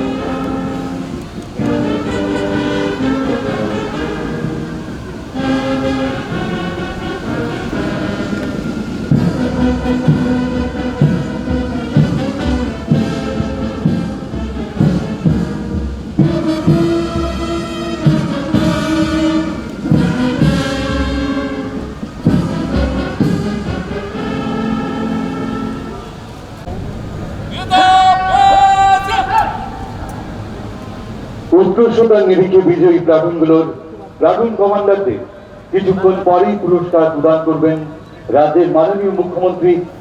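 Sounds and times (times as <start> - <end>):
brass band playing a march: 0.0 - 31.6
steady drum beat: 7.2 - 25.2.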